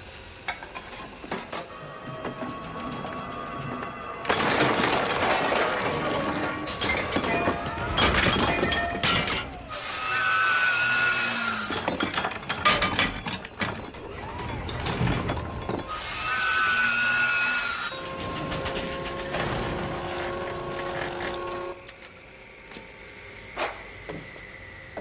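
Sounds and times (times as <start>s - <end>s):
clattering and crashing impacts: 1.1s - 9.7s, 11.6s - 15.9s.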